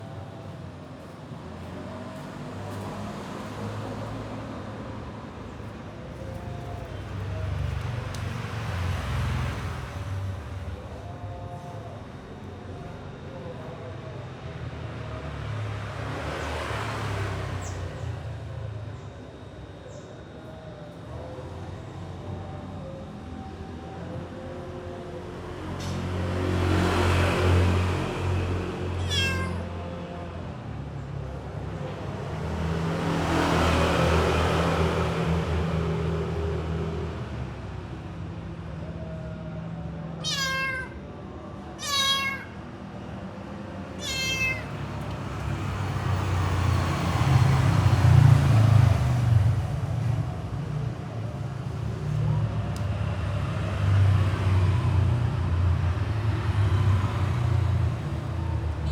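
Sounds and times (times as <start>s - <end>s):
passing vehicle rumble: 0.0s - 22.6s, 24.2s - 58.9s
cat meowing: 28.9s - 29.8s, 40.2s - 41.1s, 41.8s - 42.6s, 44.0s - 44.9s
motor vehicle passing: 44.0s - 58.9s.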